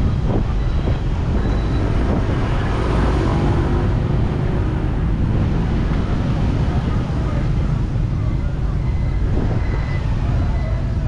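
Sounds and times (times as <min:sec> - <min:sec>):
street traffic rumble: 0:00.0 - 0:11.0
faint passing engine hum: 0:01.1 - 0:08.8.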